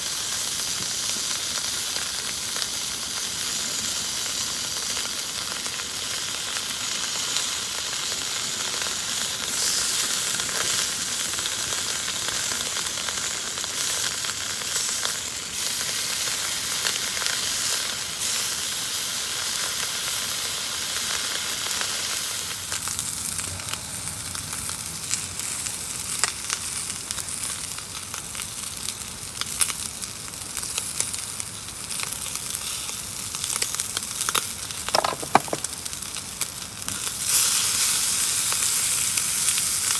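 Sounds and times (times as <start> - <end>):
food sizzling in a pan: 0.0 - 22.7.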